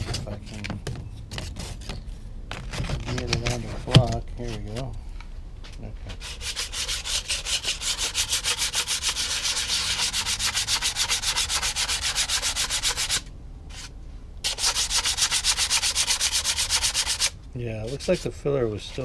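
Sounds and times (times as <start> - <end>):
sandpaper rubbing back and forth: 6.2 - 19.0.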